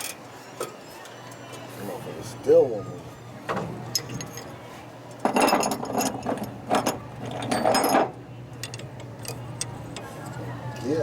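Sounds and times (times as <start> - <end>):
metal tools clinking and scraping: 3.9 - 4.6, 5.2 - 10.4.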